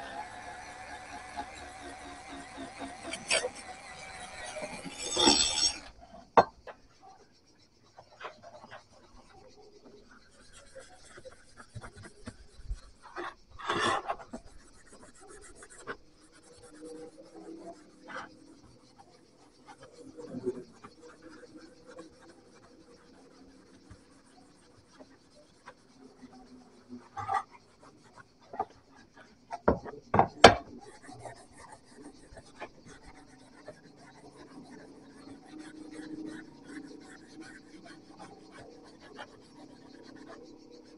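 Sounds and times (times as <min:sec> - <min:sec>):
rubbing and scraping on metal: 0:00.0 - 0:06.0, 0:08.0 - 0:40.9.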